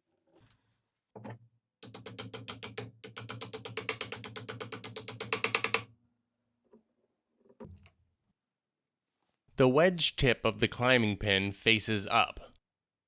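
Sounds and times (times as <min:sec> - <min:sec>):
ratchet clicking fast: 0:01.8 - 0:05.9.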